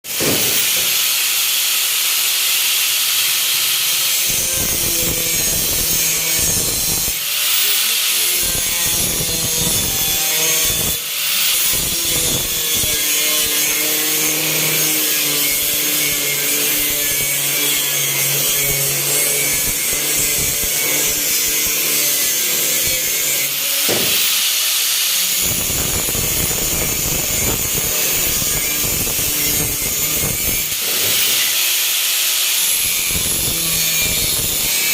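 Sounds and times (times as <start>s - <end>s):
power tool rasping on metal: 0.1s - 34.9s.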